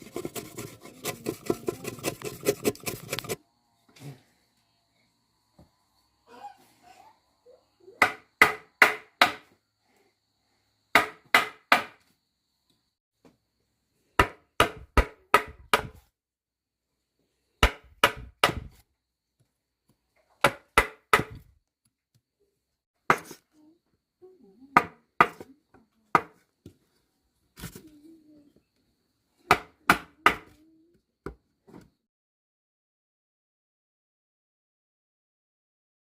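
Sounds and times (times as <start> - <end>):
hand tool striking wood: 0.0 - 3.4, 11.0 - 12.0, 14.2 - 16.0, 17.6 - 18.8, 23.1 - 23.4.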